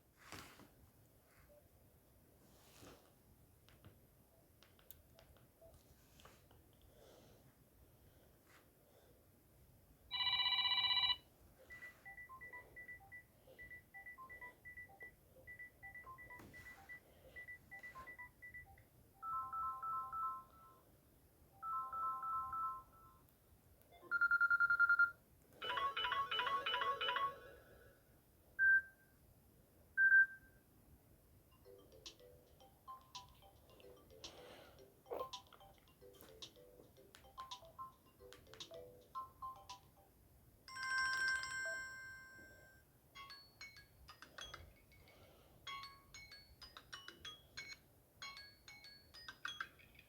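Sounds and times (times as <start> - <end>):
electronic phone ringtones: 10.1 - 20.8, 21.6 - 23.2, 24.0 - 27.7, 31.5 - 40.1, 40.7 - 44.8.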